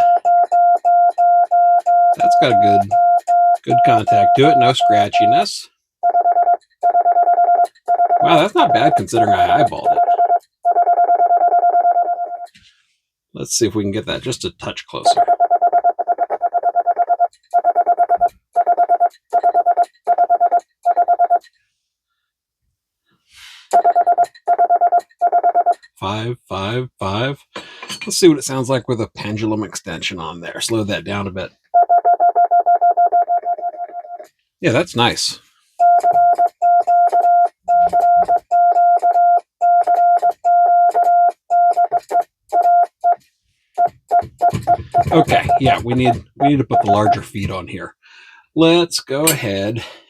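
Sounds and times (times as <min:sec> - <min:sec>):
morse code beeps: 0:00.0 - 0:05.4, 0:06.0 - 0:12.5, 0:15.1 - 0:21.4, 0:23.7 - 0:25.8, 0:31.8 - 0:34.3, 0:35.8 - 0:43.2, 0:43.8 - 0:47.2.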